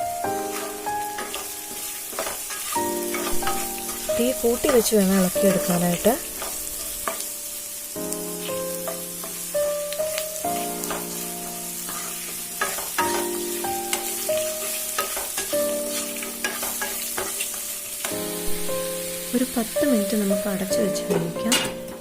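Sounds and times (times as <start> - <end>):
background music with held notes: 0.0 - 22.0
mushrooms sizzling in a pan: 0.0 - 22.0
spatula scraping a pan: 0.3 - 7.4, 10.1 - 18.2.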